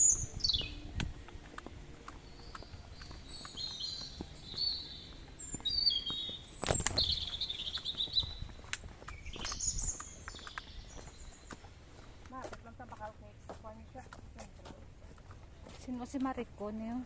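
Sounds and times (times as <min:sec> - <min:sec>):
songbirds singing: 0:00.0 - 0:13.0.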